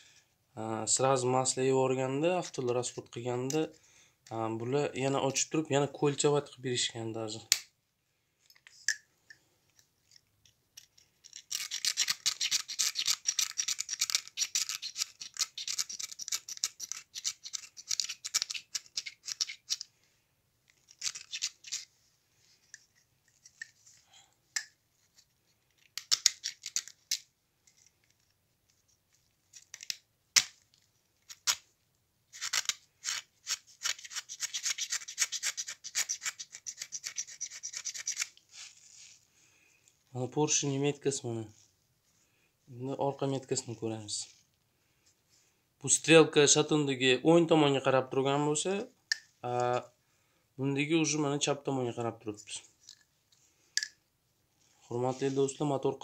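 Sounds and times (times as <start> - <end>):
short scrapes and clicks: 32.3 - 39.2.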